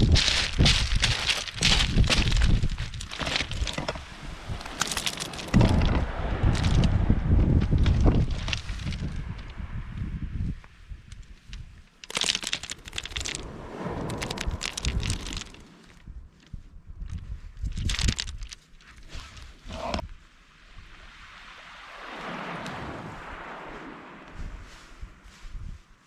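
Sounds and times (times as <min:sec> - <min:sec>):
crunching and clattering: 0:00.0 - 0:04.0, 0:04.6 - 0:06.0, 0:11.2 - 0:16.0, 0:17.7 - 0:19.0
wind buffeting microphone: 0:00.0 - 0:18.6, 0:20.8 - 0:26.0.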